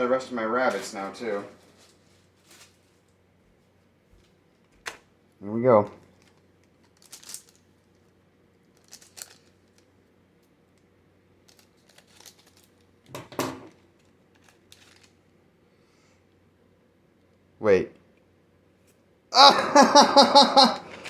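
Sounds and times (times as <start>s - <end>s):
card pack wrapper crinkling and tearing: 6.2s - 7.6s, 8.8s - 9.8s, 11.5s - 12.9s, 14.3s - 15.2s.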